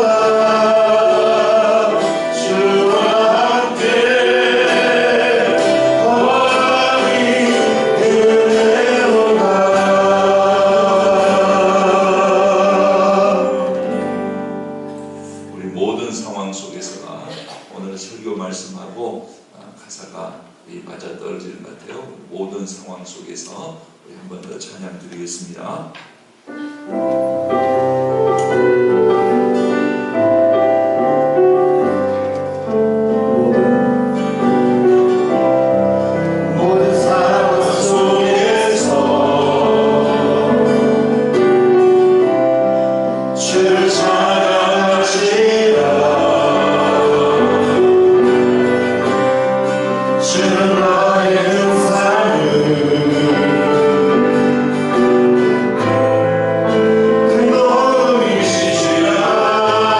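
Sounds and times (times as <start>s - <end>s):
group singing worship song: 0.0s - 14.4s, 35.3s - 59.9s
keyboard chords: 0.0s - 17.2s, 26.4s - 59.9s.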